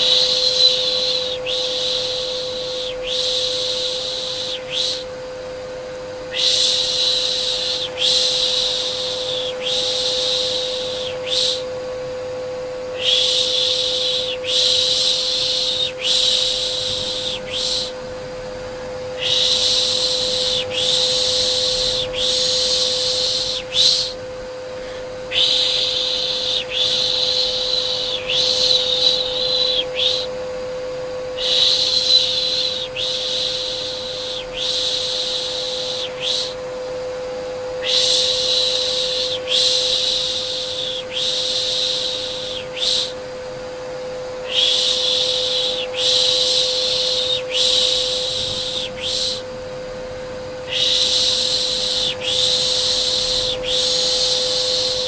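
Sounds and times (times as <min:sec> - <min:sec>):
vacuum cleaner hum: 0:00.0 - 0:55.0
person shushing baby: 0:12.9 - 0:18.0, 0:19.2 - 0:24.2, 0:24.8 - 0:30.3, 0:31.4 - 0:36.6, 0:37.8 - 0:43.2, 0:44.4 - 0:49.5, 0:50.7 - 0:55.0.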